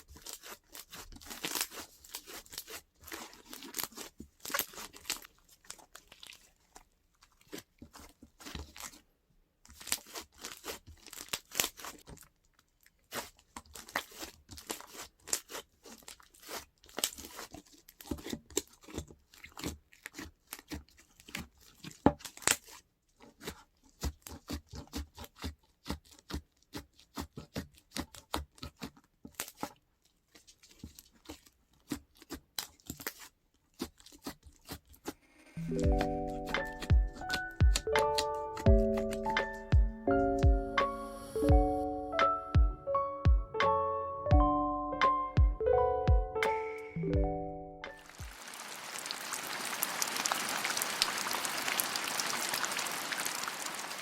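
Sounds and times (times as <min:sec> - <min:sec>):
slime squeezed by hand: 0:35.6 - 0:39.7.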